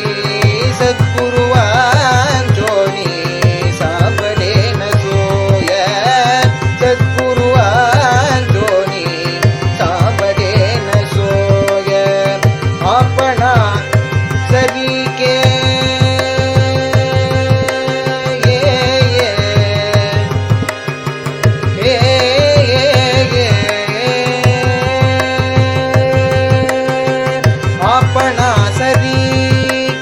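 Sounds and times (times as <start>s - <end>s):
person singing without words: 0.0s - 20.4s
harmonium: 0.0s - 30.0s.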